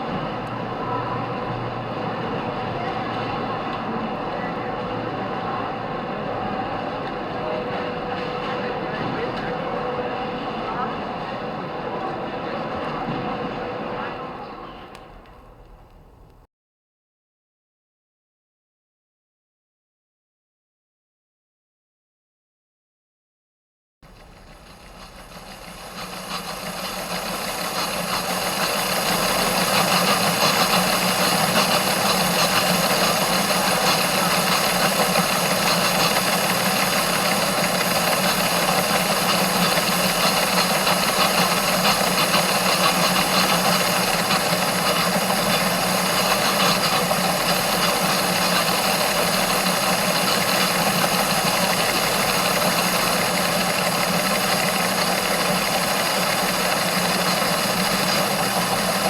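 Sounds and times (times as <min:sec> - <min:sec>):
machine rattly vibrating hum: 0:00.0 - 0:16.5, 0:24.1 - 0:59.0.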